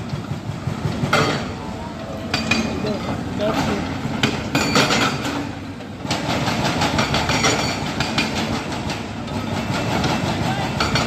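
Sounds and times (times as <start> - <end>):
hydraulic breaker hammering: 6.1 - 9.0.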